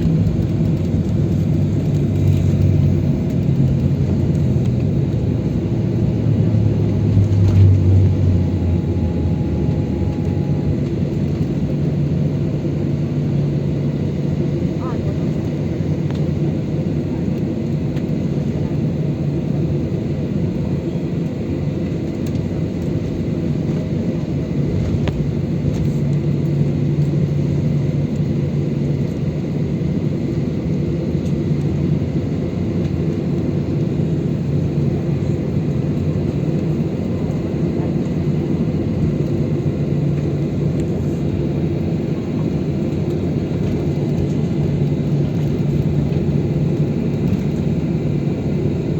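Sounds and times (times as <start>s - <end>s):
jet engine hum in cabin: 0.0s - 48.9s.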